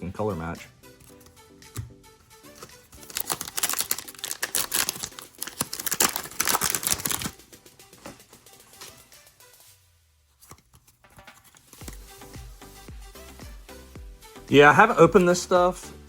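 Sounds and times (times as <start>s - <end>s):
cards being handled: 1.0s - 9.7s, 10.3s - 12.2s
plastic wrapper crinkling and tearing: 2.6s - 7.4s.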